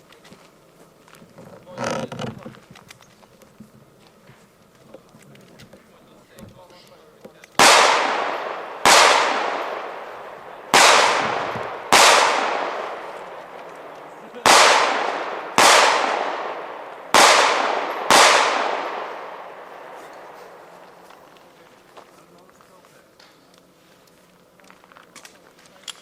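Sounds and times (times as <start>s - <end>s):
pistol shots echoing: 7.6s - 21.2s.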